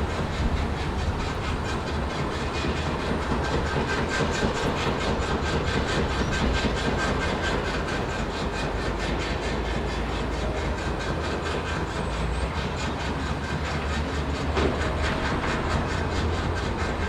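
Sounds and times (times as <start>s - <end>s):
machinery deep rumble: 0.0s - 6.6s, 13.3s - 17.0s.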